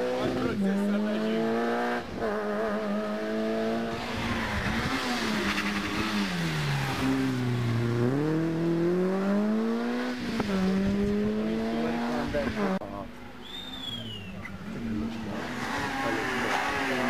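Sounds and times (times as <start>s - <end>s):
rally car engine revving: 0.0s - 12.8s, 14.5s - 17.0s.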